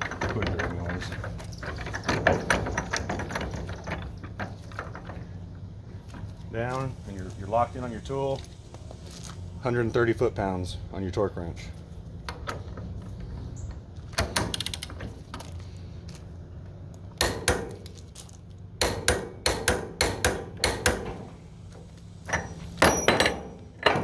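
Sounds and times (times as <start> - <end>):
loud ringing metal clang: 22.4 - 24.0.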